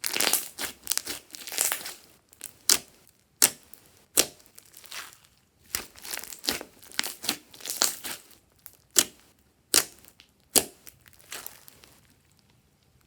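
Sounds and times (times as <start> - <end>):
slime squished by hand: 0.0 - 12.0
wet crackling: 3.4 - 12.1.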